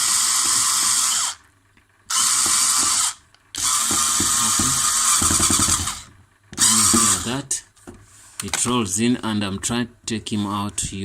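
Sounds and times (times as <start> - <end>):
electric screwdriver running: 0.0 - 1.4, 2.1 - 7.4.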